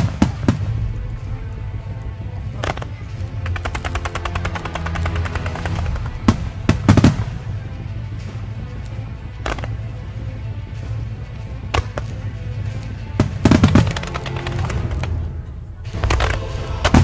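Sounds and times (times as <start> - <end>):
firework bangs: 0.0 - 1.0, 2.6 - 7.5, 13.2 - 15.2
firework crackling: 0.0 - 1.8, 2.6 - 7.6, 13.2 - 15.2
steady low rumble: 0.0 - 17.0.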